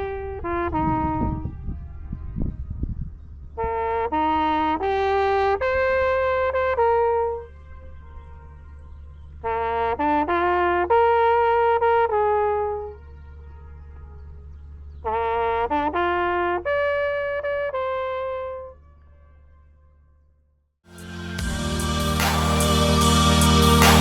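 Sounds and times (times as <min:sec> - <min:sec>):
low steady drone: 0:20.9 - 0:24.0
melody instrument held notes: 0:20.9 - 0:24.0.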